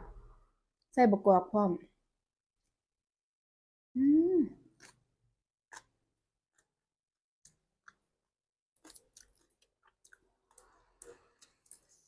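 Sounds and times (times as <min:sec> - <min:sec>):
faint crunchy chewing: 0:04.7 - 0:05.1, 0:08.8 - 0:12.0.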